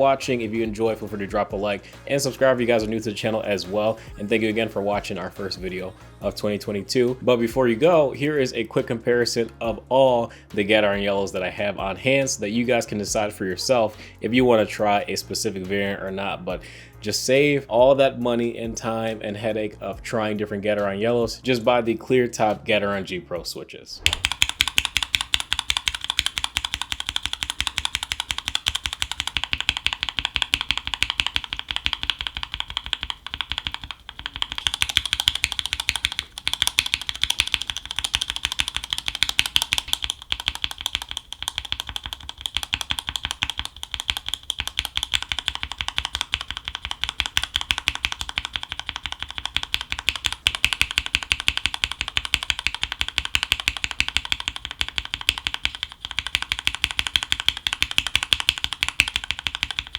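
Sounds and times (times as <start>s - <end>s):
mechanical keyboard fast typing: 24.1s - 59.9s.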